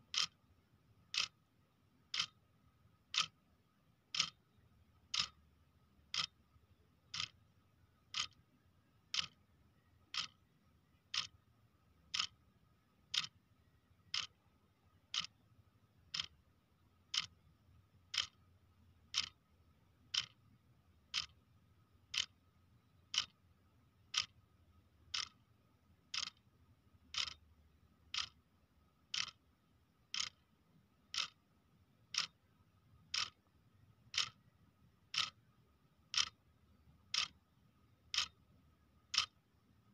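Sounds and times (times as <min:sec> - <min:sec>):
clock ticking: 0:00.0 - 0:01.4, 0:02.1 - 0:02.4, 0:03.1 - 0:03.4, 0:04.1 - 0:05.4, 0:06.0 - 0:06.4, 0:07.0 - 0:07.4, 0:08.0 - 0:08.5, 0:09.1 - 0:09.4, 0:10.0 - 0:11.4, 0:12.0 - 0:13.4, 0:14.0 - 0:15.4, 0:16.0 - 0:19.5, 0:20.1 - 0:20.5, 0:21.1 - 0:21.4, 0:22.0 - 0:22.4, 0:23.1 - 0:23.4, 0:24.1 - 0:24.4, 0:25.0 - 0:27.5, 0:28.1 - 0:29.5, 0:30.1 - 0:31.5, 0:32.1 - 0:33.5, 0:34.1 - 0:34.5, 0:35.1 - 0:35.5, 0:36.1 - 0:36.4, 0:37.1 - 0:39.5.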